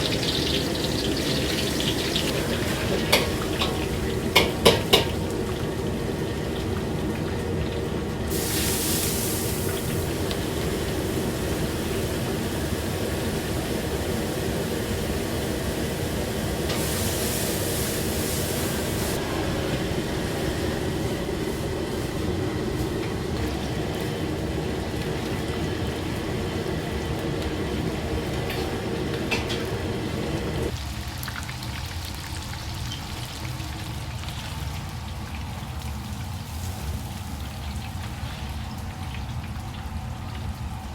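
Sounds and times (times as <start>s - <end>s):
rushing hiss: 8.3s - 15.9s
low hum: 18.9s - 25.3s.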